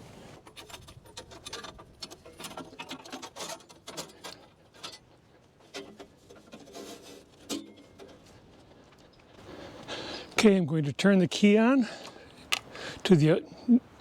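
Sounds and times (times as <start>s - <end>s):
hands handling metal parts: 0.4s - 9.4s.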